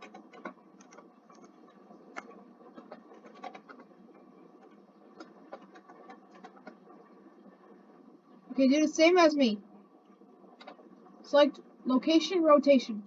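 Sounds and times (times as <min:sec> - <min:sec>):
computer mouse and keyboard clicks: 0:00.0 - 0:07.0, 0:10.6 - 0:10.8
low background hiss: 0:03.8 - 0:13.0.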